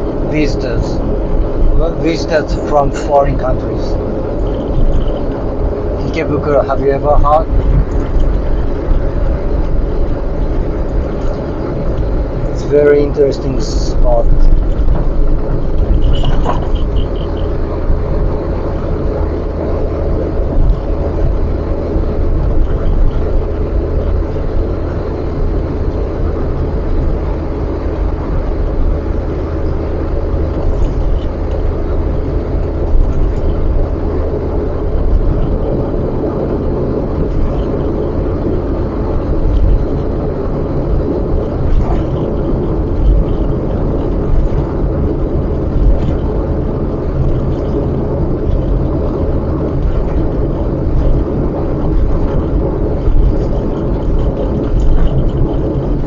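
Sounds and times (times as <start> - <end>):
car road and engine noise: 0.0 - 56.0
constant low hum: 0.0 - 56.0.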